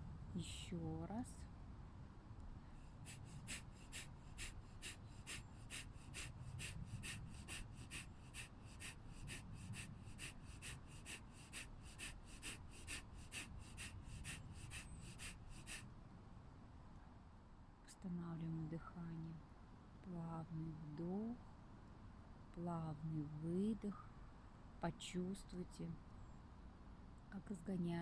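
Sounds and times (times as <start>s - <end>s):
woman exhaling sharply through nose: 2.8s - 15.9s.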